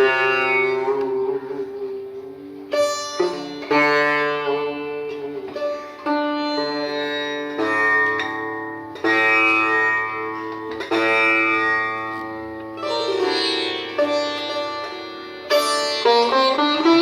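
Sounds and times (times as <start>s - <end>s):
plucked string instrument music: 0.0s - 17.0s.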